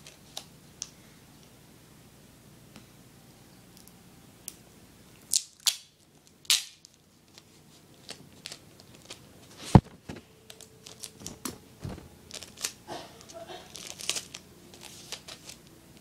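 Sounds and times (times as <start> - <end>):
sticky tape ripped off roll: 6.5 - 6.9
paper and tape handled: 6.5 - 16.0.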